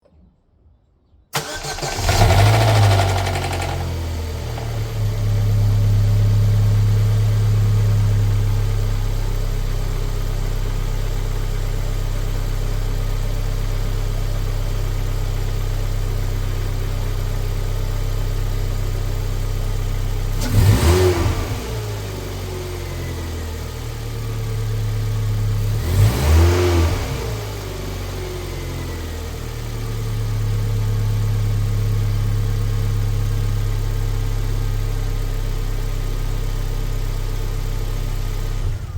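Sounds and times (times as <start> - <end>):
car engine starting and idling: 1.3 - 38.9
car engine revving: 1.4 - 7.0, 20.3 - 22.4, 25.6 - 27.6.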